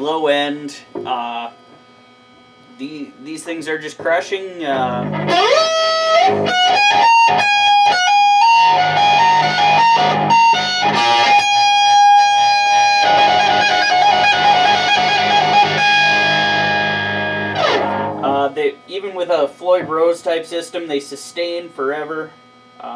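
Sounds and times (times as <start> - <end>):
distorted electric guitar: 4.2 - 18.8.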